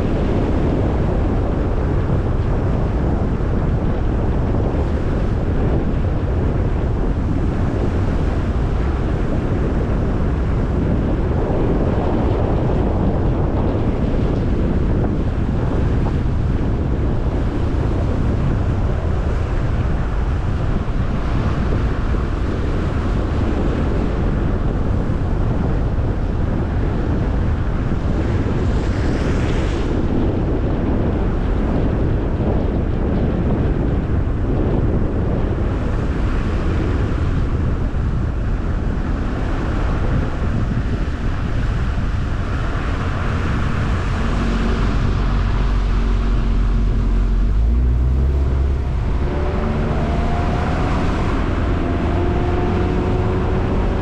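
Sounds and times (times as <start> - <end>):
low engine hum: 0.0 - 54.0
tyre and wind road noise: 0.0 - 54.0
wind buffeting microphone: 0.0 - 54.0
faint rising engine tone: 43.2 - 54.0.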